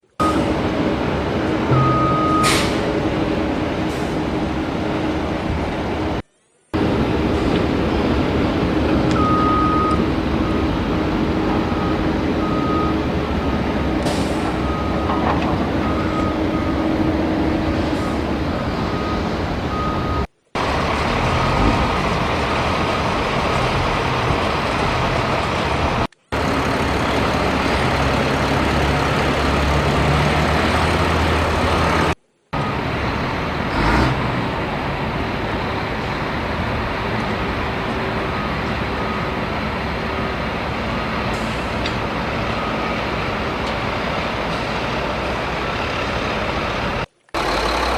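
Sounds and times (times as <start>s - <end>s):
short repeating beep: 1.7s - 2.6s.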